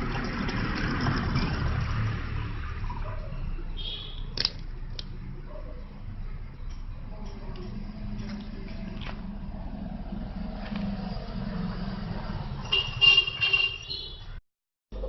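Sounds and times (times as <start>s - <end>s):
outdoor traffic noise: 0.0s - 15.0s
vehicle horn honking: 12.6s - 14.4s.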